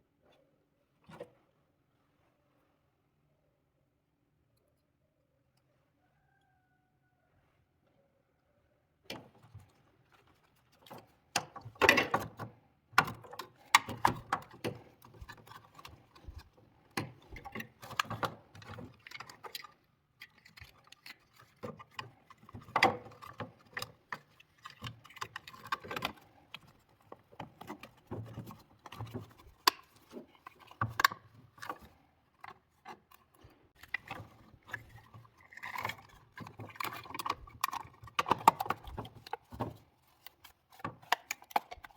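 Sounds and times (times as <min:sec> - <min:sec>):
clicks and taps of hard parts: 0:10.8 - 0:41.9.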